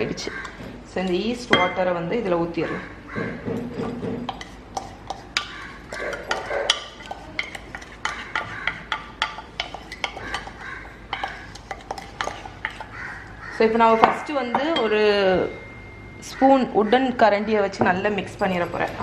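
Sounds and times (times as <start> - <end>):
spoon stirring in mixing bowl: 3.6 - 15.2, 17.7 - 19.0.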